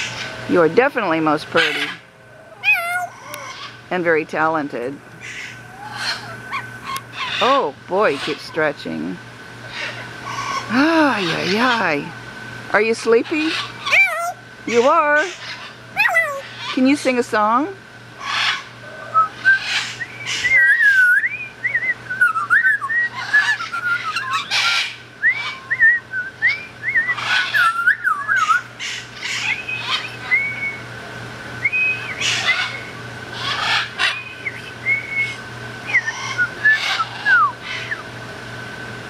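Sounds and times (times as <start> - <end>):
harsh parrot noises: 0.0 - 17.3, 18.1 - 26.0, 26.6 - 30.9, 31.6 - 38.2
parrot whistling: 1.6 - 3.8, 5.2 - 7.4, 13.5 - 14.8, 16.0 - 16.5, 18.3 - 30.8, 31.6 - 38.1.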